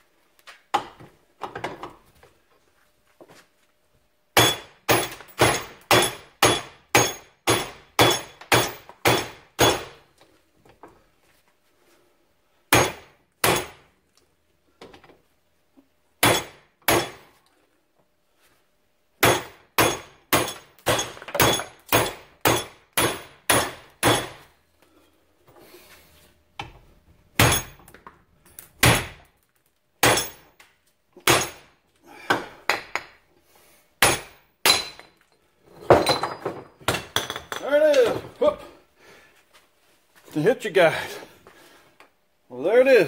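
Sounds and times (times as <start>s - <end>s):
hammer striking metal: 4.4s - 10.0s, 12.7s - 13.8s, 16.2s - 17.3s, 19.2s - 24.4s, 27.4s - 27.8s, 30.0s - 30.5s, 31.2s - 31.7s, 34.0s - 35.1s.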